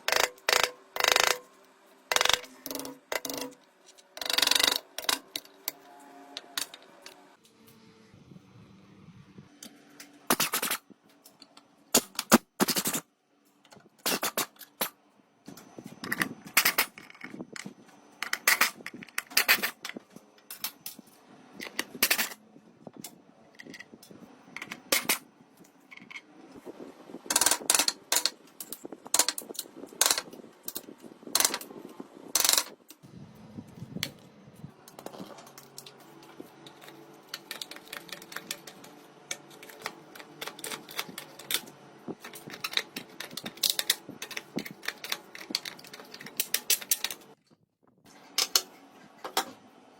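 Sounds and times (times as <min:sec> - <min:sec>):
hand tools clicking and knocking: 0:00.0 - 0:01.5, 0:02.1 - 0:05.8, 0:27.3 - 0:31.7, 0:34.9 - 0:41.6, 0:42.2 - 0:47.3.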